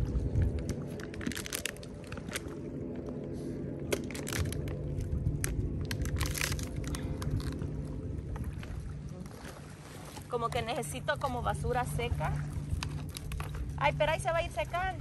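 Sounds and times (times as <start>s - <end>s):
steady low hum: 0.0s - 15.0s
litter and debris crunching: 0.5s - 2.6s, 3.9s - 7.8s.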